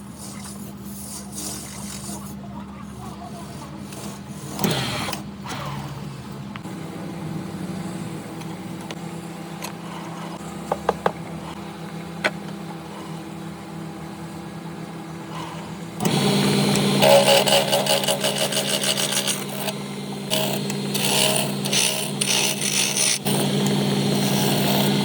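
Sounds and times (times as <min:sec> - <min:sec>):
power tool motor humming: 0:16.0 - 0:25.0.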